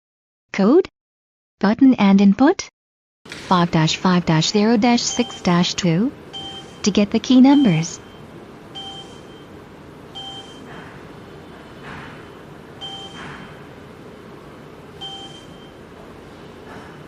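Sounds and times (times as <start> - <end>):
low steady hum: 3.3 - 17.0
short electronic beeps: 6.4 - 8.2, 8.8 - 9.5, 10.2 - 10.7, 12.8 - 13.2, 15.0 - 15.8.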